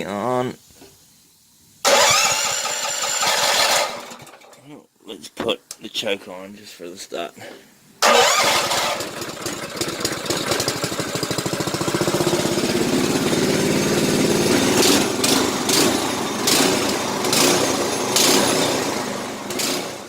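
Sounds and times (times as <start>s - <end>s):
small petrol engine running: 1.9s - 4.5s, 8.0s - 20.0s.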